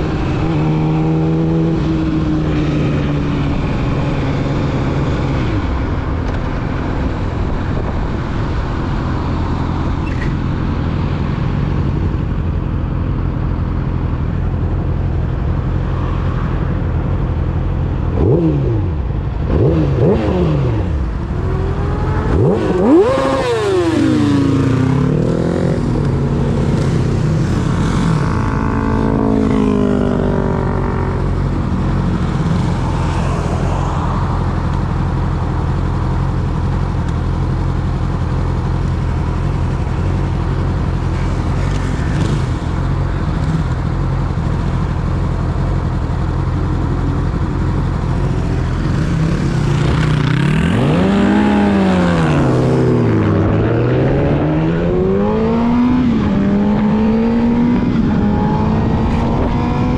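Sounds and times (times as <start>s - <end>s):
motorcycle engine revving: 15.6s - 59.9s.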